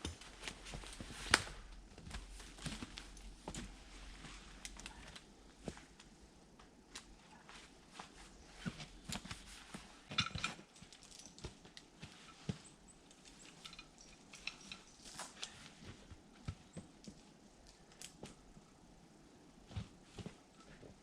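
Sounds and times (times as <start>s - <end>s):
light clicks of rigging gear: 4.3s - 7.1s.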